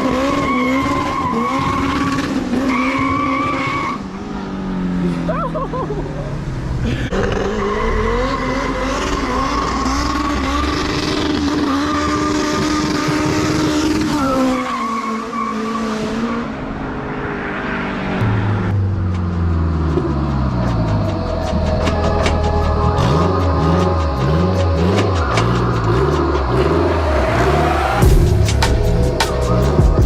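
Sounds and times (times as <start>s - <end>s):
car engine accelerating: 0.0s - 30.0s
music: 19.8s - 30.0s.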